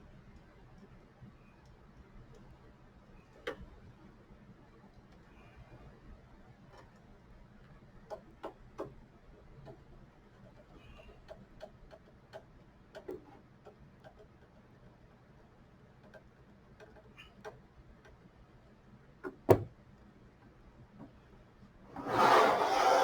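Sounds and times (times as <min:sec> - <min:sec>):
small metal ticks of screwing: 0:10.5 - 0:14.7.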